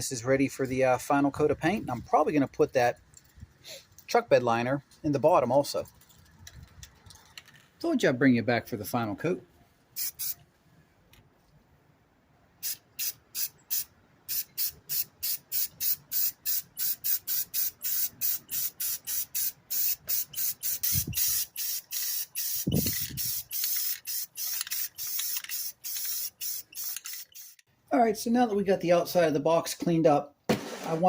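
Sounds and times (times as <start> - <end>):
spray can hissing: 10.0 - 10.4, 12.6 - 27.7.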